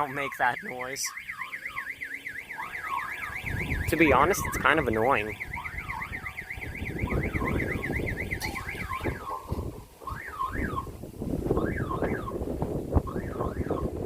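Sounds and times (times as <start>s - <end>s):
fast warbling alarm: 0.0s - 14.0s
rising and falling alarm sweep: 0.0s - 14.0s
wind rumble on microphone: 2.8s - 14.0s.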